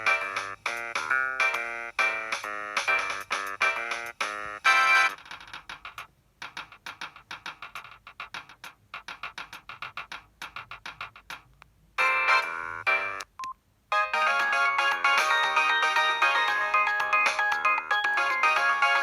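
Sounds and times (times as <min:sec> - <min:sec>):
synthesized phone ringtone: 0:04.6 - 0:05.2, 0:12.0 - 0:13.2, 0:13.9 - 0:19.0.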